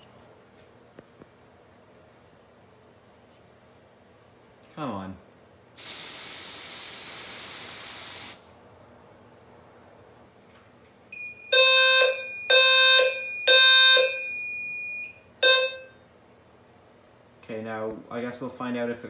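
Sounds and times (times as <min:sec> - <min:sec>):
aerosol spray hissing: 0:05.8 - 0:08.6
fire alarm blasts: 0:11.1 - 0:16.0
steady high alarm tone: 0:11.1 - 0:16.0.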